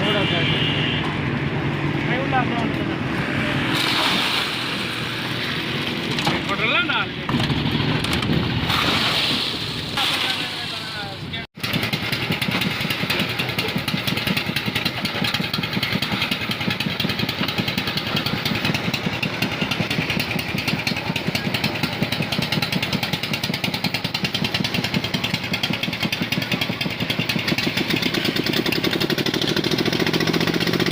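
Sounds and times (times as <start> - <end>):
small engine pulsing: 11.6 - 30.9.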